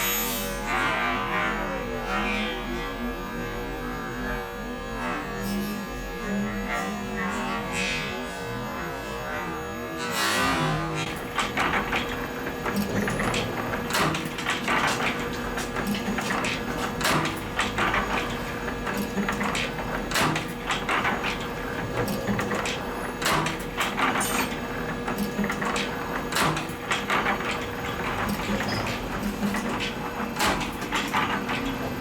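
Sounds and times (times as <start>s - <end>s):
spring-making machine running: 9.2s - 32.0s
mechanical clacks: 10.1s - 32.0s.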